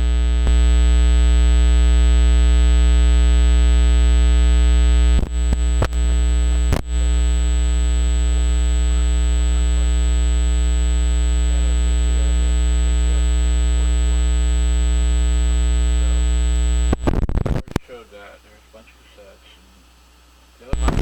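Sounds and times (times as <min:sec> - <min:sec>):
electrical crackles: 0:00.0 - 0:18.0, 0:20.6 - 0:21.0
electrical mains hum: 0:00.0 - 0:21.0.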